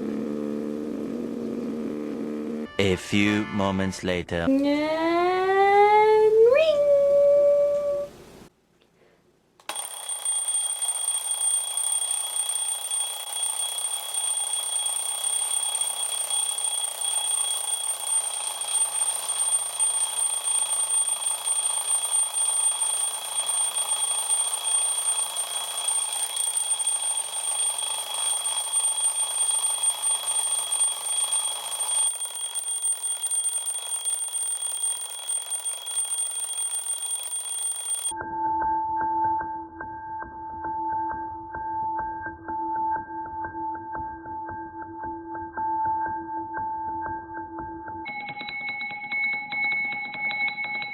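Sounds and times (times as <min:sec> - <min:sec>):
alarm clock ringing: 0:09.7 - 0:38.2, 0:48.1 - 0:50.9.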